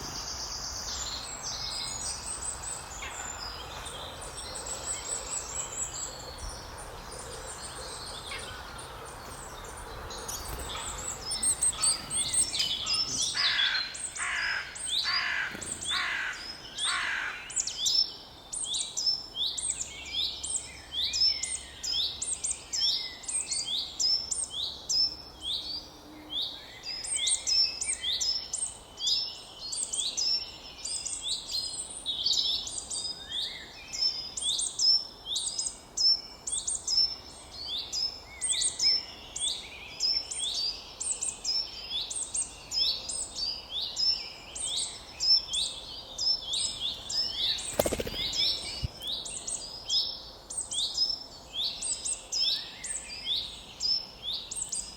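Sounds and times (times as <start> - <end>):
loud repeated bird calls: 4.6 - 17.8, 46.9 - 49.6.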